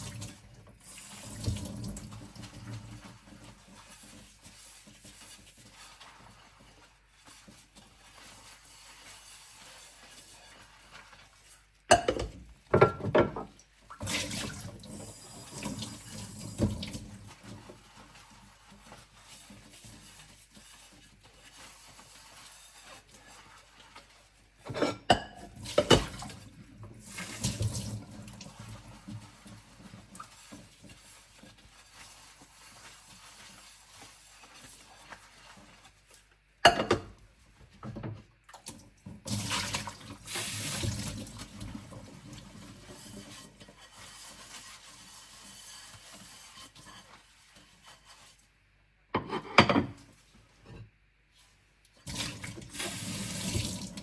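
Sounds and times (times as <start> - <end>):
quiet scrubbing: 0.7 - 11.9, 15.0 - 24.8, 26.3 - 36.4, 41.4 - 48.6.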